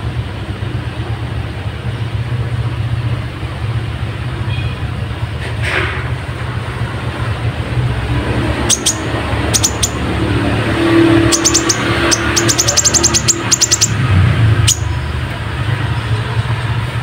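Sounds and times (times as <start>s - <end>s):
bird calling in sharp high chips: 8.6s - 14.0s, 14.6s - 15.0s.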